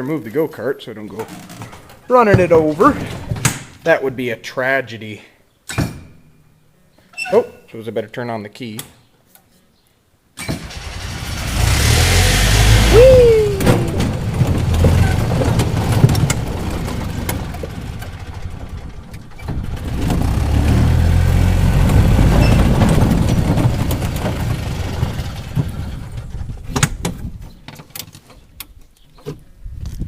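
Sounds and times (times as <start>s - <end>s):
tractor diesel engine running: 10.6s - 27.3s.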